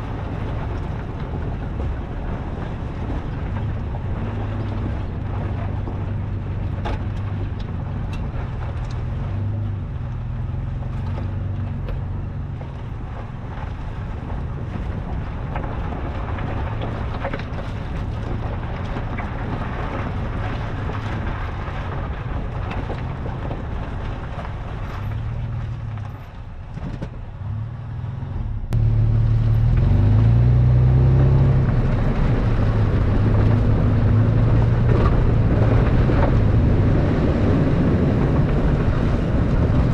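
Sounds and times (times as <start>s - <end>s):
knocks and rattles: 0.0s - 27.6s
engine running off-road: 0.0s - 39.9s.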